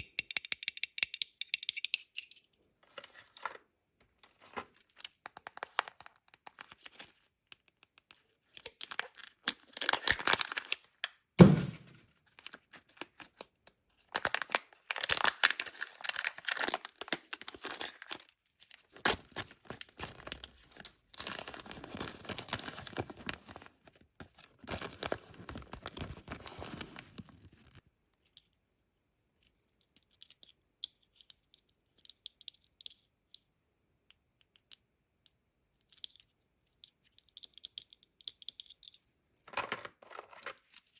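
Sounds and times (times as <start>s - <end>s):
foil wrapper tearing and crinkling: 8.6s - 11.1s, 14.1s - 23.8s
dull thump: 11.4s - 12.0s.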